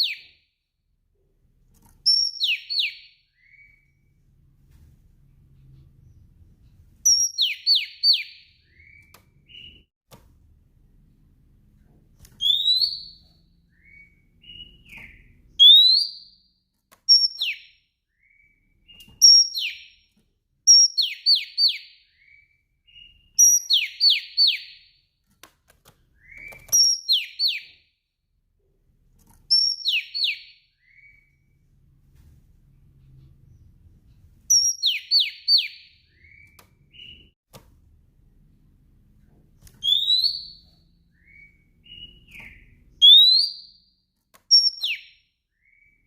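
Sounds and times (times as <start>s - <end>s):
bird whistling calls: 12.4s - 16.3s, 39.8s - 40.6s, 41.2s - 43.8s, 44.5s - 45.9s.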